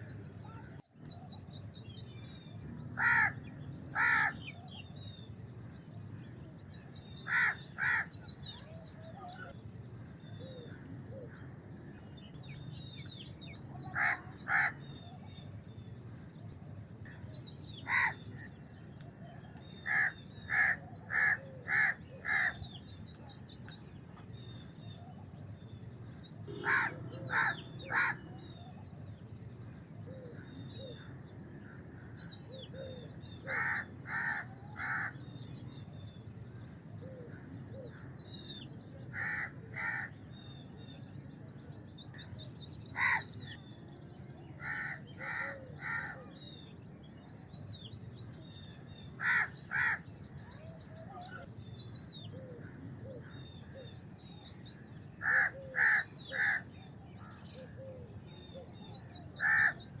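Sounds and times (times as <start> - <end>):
small birds chirping: 0.0 - 60.0
crow cawing: 3.0 - 3.4, 4.0 - 4.5, 7.3 - 8.1, 13.9 - 14.8, 17.9 - 18.2, 19.8 - 22.6, 26.5 - 28.3, 33.5 - 35.2, 39.2 - 40.2, 43.0 - 43.2, 44.6 - 46.2, 49.2 - 50.1, 55.2 - 56.6, 59.4 - 59.8.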